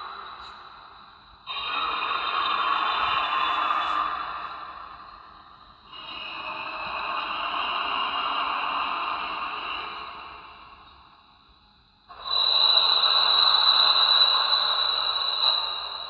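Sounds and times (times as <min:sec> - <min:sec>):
breathy hissing creature call: 0:01.5 - 0:05.0.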